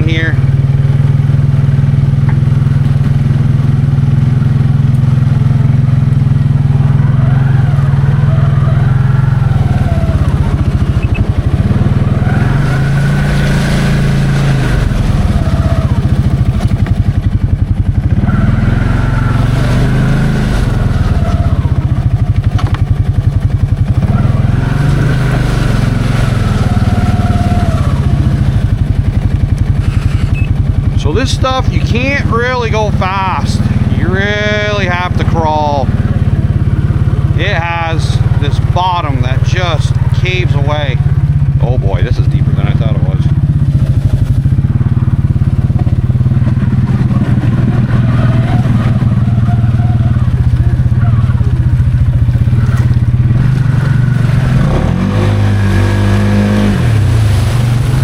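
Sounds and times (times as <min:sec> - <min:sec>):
atv engine revving: 0:00.0 - 0:58.0.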